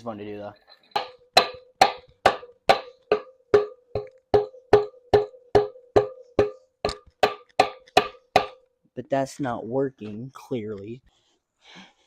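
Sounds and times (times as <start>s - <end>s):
metallic tapping with ring: 0.7s - 8.7s.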